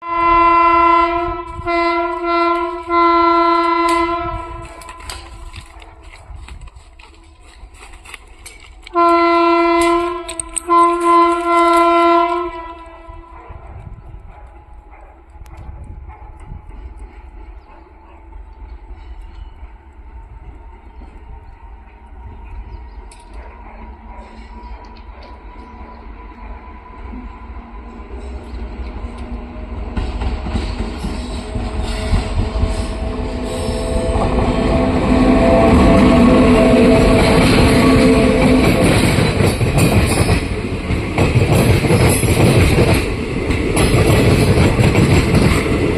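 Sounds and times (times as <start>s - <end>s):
train horn blasts: 0.0s - 5.5s, 8.8s - 13.6s, 30.9s - 39.6s
low rumble of train: 0.0s - 45.9s.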